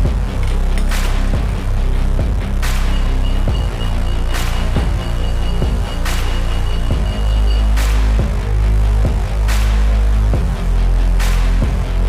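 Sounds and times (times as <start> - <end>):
electronic music: 0.0 - 12.0
heavy sustained bass: 0.0 - 12.0
deep kick drum hits: 6.9 - 7.4.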